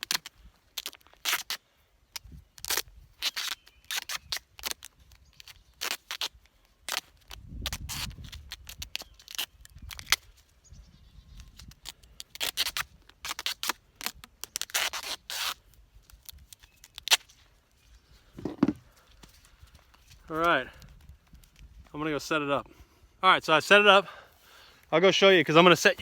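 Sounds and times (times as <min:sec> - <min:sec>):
duct tape ripping off roll: 0:00.0 - 0:10.4, 0:11.6 - 0:17.4.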